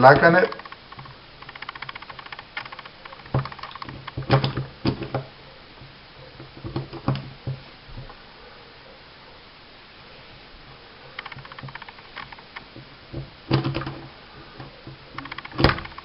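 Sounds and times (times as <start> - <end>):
pistol parts clicking and tapping: 0.2 - 5.2, 11.2 - 12.7, 13.6 - 16.0.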